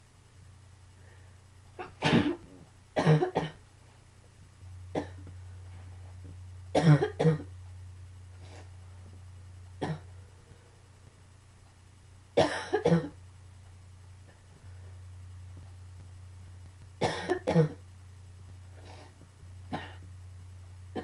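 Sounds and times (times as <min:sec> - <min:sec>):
person coughing: 0:01.8 - 0:02.4, 0:03.0 - 0:03.6, 0:06.8 - 0:07.5, 0:09.8 - 0:10.1, 0:12.4 - 0:13.2, 0:17.0 - 0:17.8, 0:19.7 - 0:20.1.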